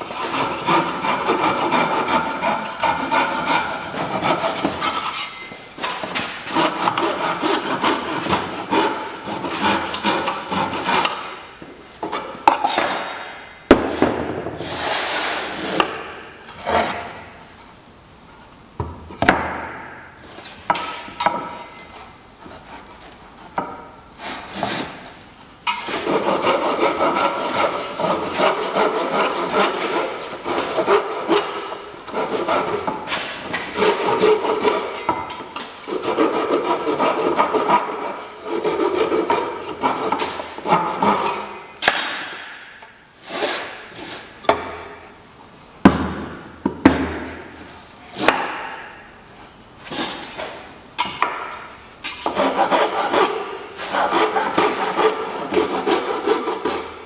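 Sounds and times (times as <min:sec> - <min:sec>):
hand tool sawing wood: 0:00.0 - 0:13.1, 0:22.4 - 0:25.0, 0:25.7 - 0:42.5, 0:43.2 - 0:44.7, 0:48.2 - 0:48.6, 0:52.1 - 0:57.0.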